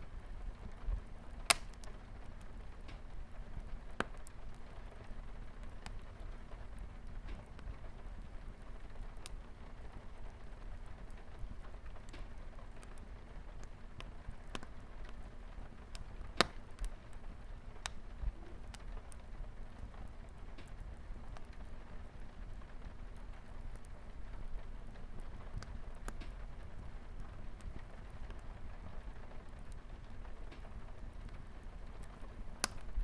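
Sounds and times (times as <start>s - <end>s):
rain pattering on a window: 0.0s - 33.0s
wood fire crackling and popping: 0.0s - 33.0s
loud sharp snap: 1.5s - 1.9s.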